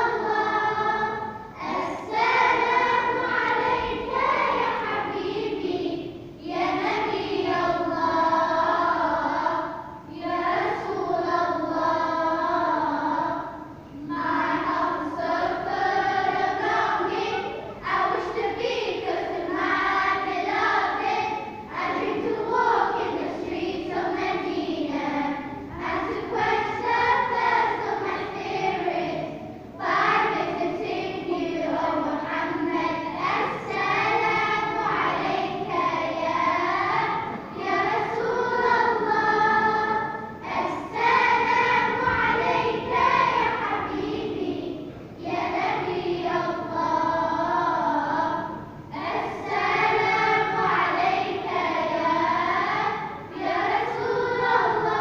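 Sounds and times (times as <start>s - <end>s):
high young voices singing: 0.0s - 55.0s.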